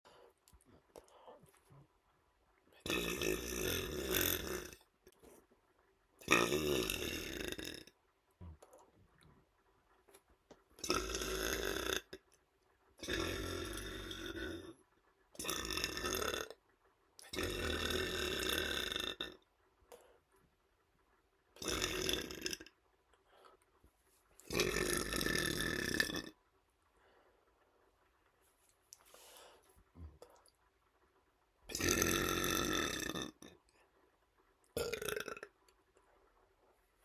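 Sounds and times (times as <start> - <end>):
man burping: 2.8 - 4.8, 6.2 - 7.9, 10.8 - 12.2, 21.6 - 22.7, 24.5 - 26.4, 31.7 - 33.5, 34.8 - 35.5.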